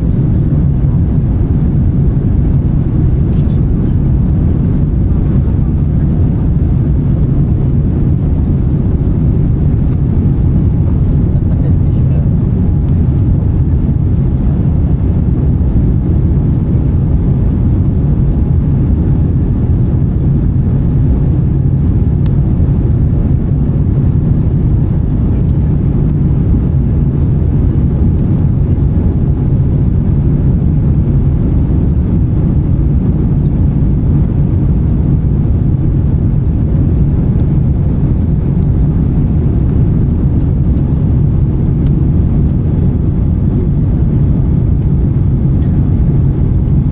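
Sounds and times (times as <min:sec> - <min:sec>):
jet engines and airflow in cabin: 0:00.0 - 0:46.9.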